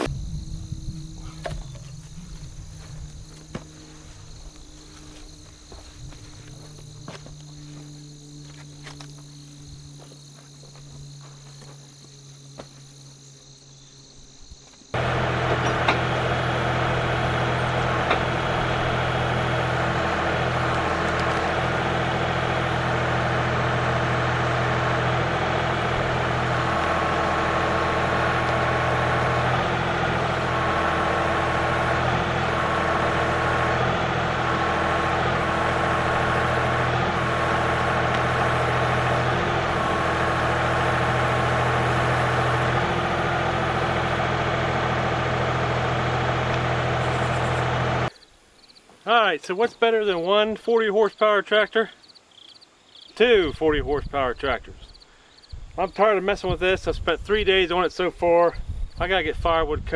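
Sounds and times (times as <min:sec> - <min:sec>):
tractor diesel engine running: 0:00.0 - 0:13.4, 0:14.9 - 0:48.1
faint insect chirping: 0:00.0 - 0:15.0, 0:48.1 - 0:53.3, 0:54.6 - 0:56.0.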